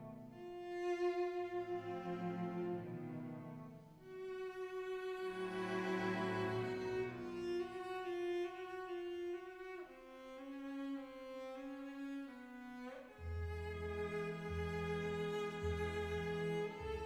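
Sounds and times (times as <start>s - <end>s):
bowed strings playing held notes: 13.2s - 17.0s.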